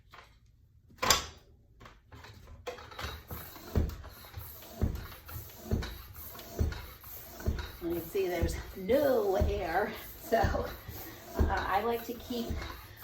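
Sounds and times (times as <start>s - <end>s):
pump strokes thudding: 2.6s - 13.0s
air hissing: 3.2s - 13.0s.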